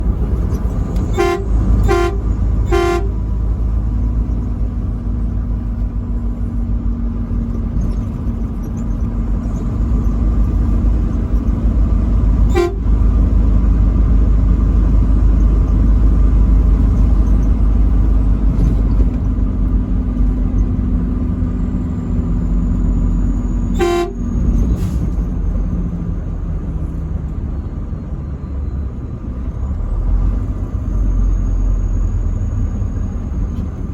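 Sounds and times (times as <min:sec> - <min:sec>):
truck driving rumble: 0:00.0 - 0:33.9
truck horn toots: 0:01.0 - 0:03.5, 0:12.4 - 0:13.3, 0:23.6 - 0:24.7.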